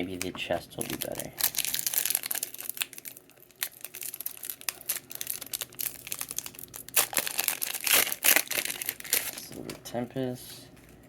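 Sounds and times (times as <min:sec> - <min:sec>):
foil wrapper crinkling and tearing: 0:00.8 - 0:09.6.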